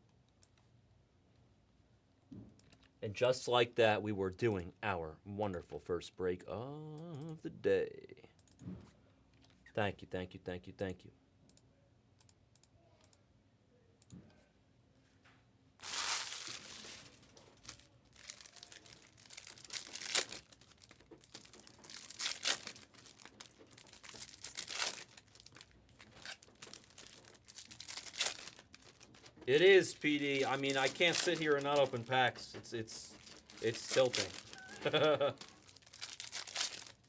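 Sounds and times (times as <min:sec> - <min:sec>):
wrappers crinkling: 0:15.8 - 0:37.0
wrappers tearing: 0:15.8 - 0:37.0.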